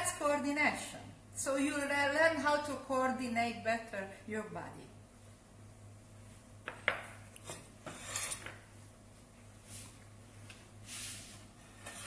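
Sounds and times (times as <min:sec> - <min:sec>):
steady low hum: 0:00.0 - 0:12.0
utensil scraping work surface: 0:07.8 - 0:08.6.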